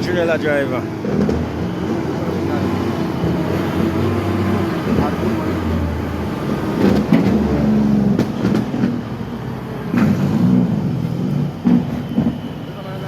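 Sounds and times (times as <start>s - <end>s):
heavy vehicle engine running: 0.0s - 13.0s
sharp knocks or clanks: 6.8s - 7.5s.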